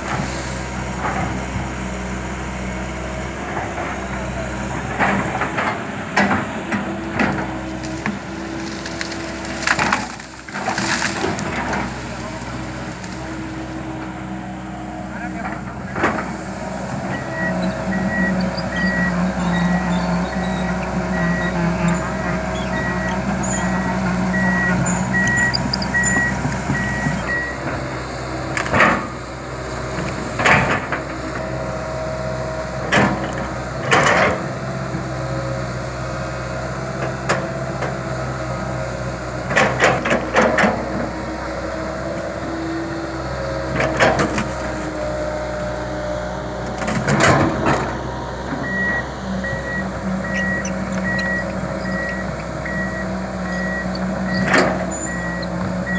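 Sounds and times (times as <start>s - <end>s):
excavator diesel engine running: 0.0s - 55.9s
travel alarm beeps: 17.1s - 27.6s, 48.6s - 55.9s.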